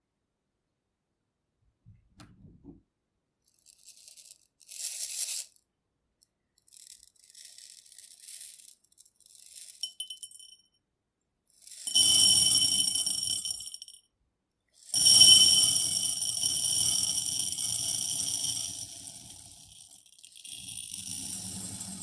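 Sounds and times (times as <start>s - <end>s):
rice pouring into glass bowl: 11.8s - 13.9s, 15.0s - 22.0s.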